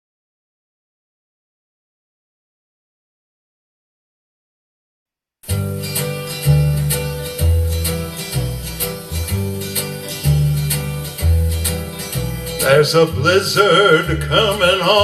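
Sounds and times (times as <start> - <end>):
country-style backing music: 5.5 - 15.0.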